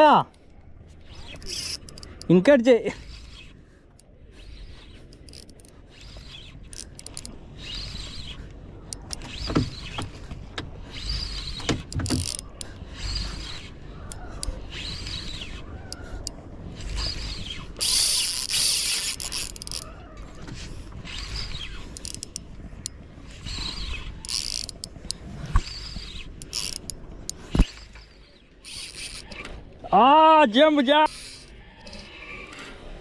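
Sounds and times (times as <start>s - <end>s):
fishing reel gears ratcheting: 0.3s - 29.8s, 31.0s - 33.0s.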